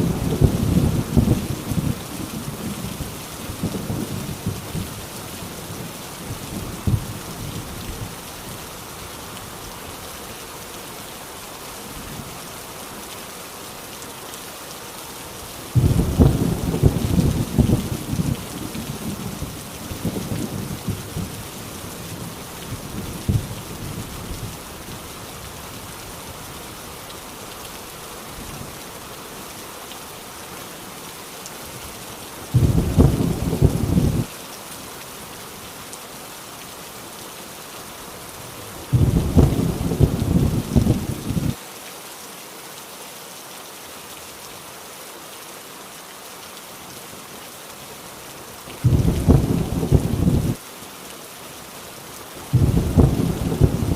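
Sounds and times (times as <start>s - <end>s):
thunder rumbling: 0.0s - 2.9s, 15.8s - 21.4s, 32.5s - 34.3s, 38.9s - 41.6s, 48.8s - 50.6s, 52.5s - 53.9s
heavy rain: 0.0s - 53.9s.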